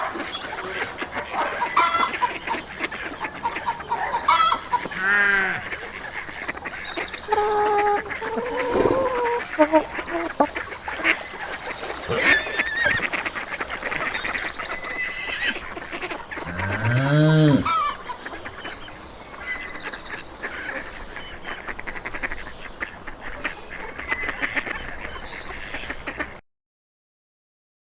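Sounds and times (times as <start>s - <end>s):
birds calling: 0.0s - 26.3s
cow mooing: 5.0s - 5.7s, 12.0s - 13.1s, 16.4s - 17.9s.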